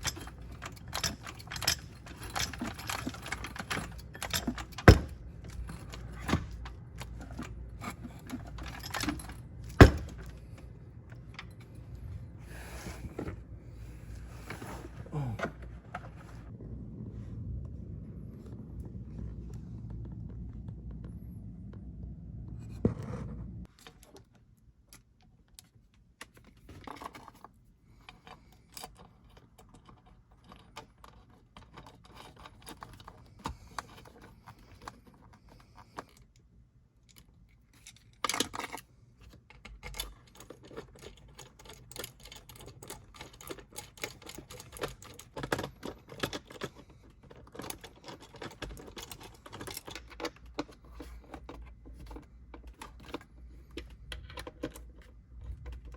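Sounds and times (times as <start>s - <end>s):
hand tools clinking: 0.0s - 10.6s.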